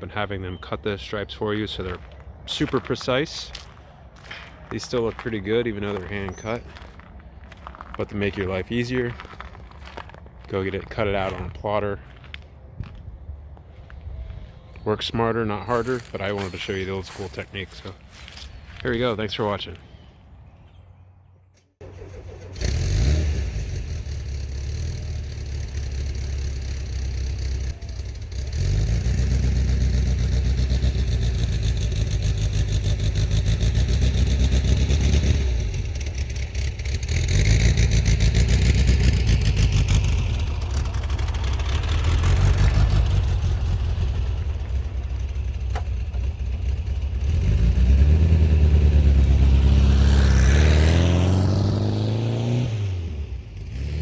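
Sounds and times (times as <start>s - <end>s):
engine starting and revving: 21.6s - 54.0s.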